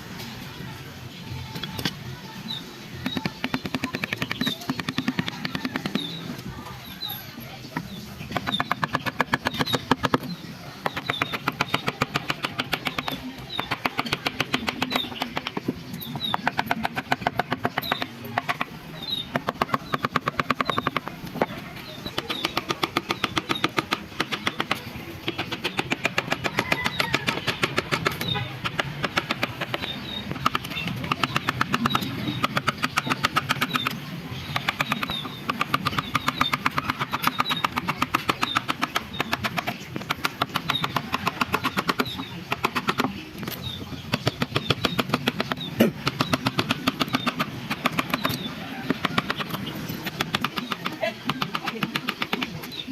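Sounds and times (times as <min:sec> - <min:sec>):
carving tool tapping wood: 0:03.0 - 0:06.1, 0:07.8 - 0:18.7, 0:19.3 - 0:21.5, 0:22.1 - 0:52.8.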